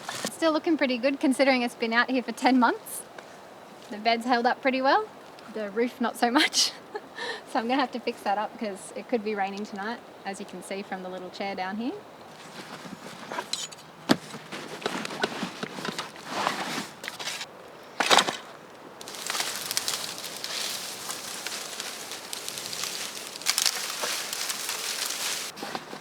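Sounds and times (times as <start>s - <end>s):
dry sticks cracking and knocking: 12.3s - 26.0s
rustling and snapping: 12.3s - 26.0s.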